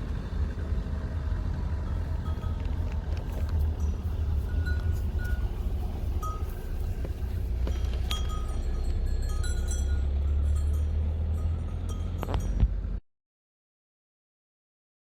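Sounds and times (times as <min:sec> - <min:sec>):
livestock bells clinking: 0:01.8 - 0:13.0.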